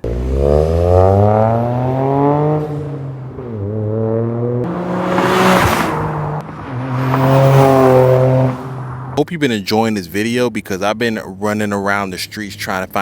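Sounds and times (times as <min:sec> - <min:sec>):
car engine revving: 0:00.0 - 0:09.2
car passing by: 0:04.6 - 0:09.2.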